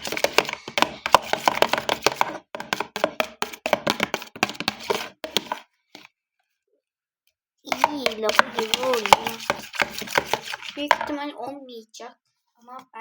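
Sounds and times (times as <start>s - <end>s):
spoon stirring slime: 0.0s - 6.1s, 7.7s - 11.3s.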